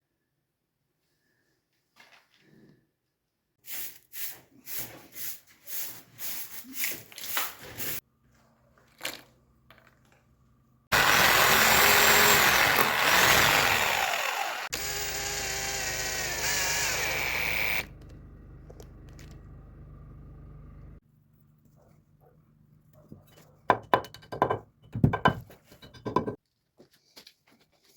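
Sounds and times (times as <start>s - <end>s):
electric power tool whining: 10.9s - 19.5s.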